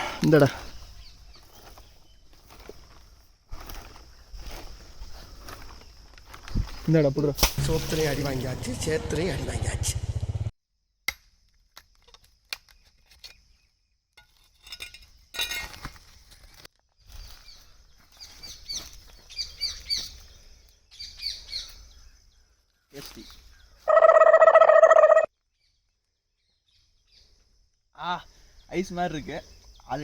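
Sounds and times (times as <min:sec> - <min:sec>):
small birds chirping: 0:00.0 - 0:07.2, 0:16.1 - 0:30.0.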